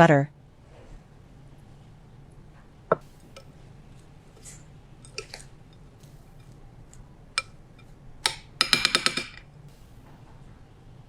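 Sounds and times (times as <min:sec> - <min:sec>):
crunching and scraping in bowl: 0:03.0 - 0:08.6
sharp knock: 0:08.3 - 0:09.4.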